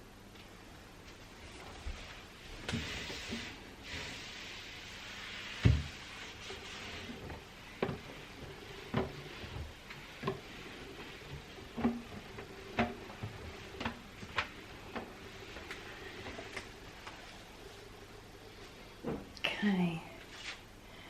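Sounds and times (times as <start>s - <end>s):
rubbing noise: 1.8s - 16.6s.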